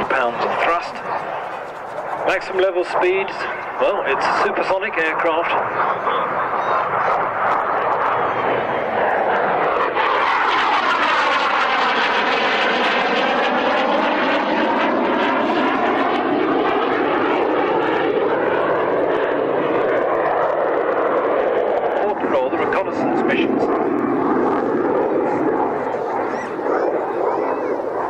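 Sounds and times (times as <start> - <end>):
jet flying past: 0.0 - 28.0.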